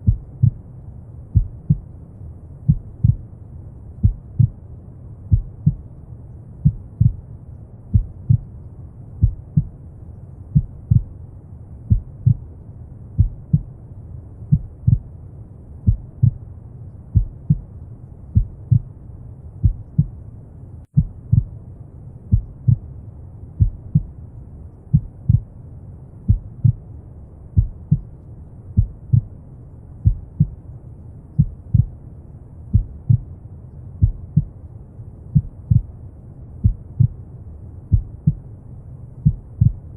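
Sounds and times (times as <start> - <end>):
slow heartbeat: 0.0 - 0.7, 1.3 - 1.9, 2.6 - 3.3, 4.0 - 4.6, 5.3 - 5.9, 6.6 - 7.2, 7.9 - 8.5, 9.2 - 9.8, 10.5 - 11.2, 11.9 - 12.5, 13.2 - 13.8, 14.5 - 15.2, 15.8 - 16.5, 17.1 - 18.9, 19.6 - 20.2, 20.9 - 21.6, 22.3 - 22.9, 23.6 - 24.2, 24.9 - 25.5, 26.3 - 26.9, 27.6 - 28.2, 28.8 - 29.3, 30.0 - 30.6, 31.3 - 32.0, 32.7 - 33.3, 34.0 - 34.6, 35.3 - 36.0, 36.6 - 37.2, 37.8 - 38.5, 39.2 - 39.9
low rumbling brown noise: 0.0 - 39.9.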